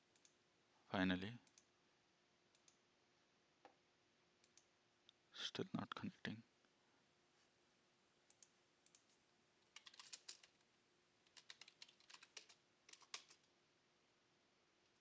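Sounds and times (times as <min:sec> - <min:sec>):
faint computer keyboard typing: 0:00.0 - 0:00.4, 0:01.4 - 0:01.7, 0:02.5 - 0:02.8, 0:04.4 - 0:04.7, 0:08.2 - 0:13.6.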